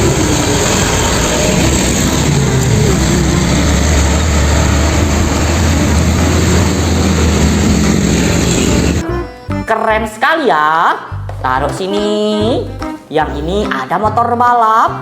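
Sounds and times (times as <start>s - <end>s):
concrete mixer truck running: 0.0s - 9.1s.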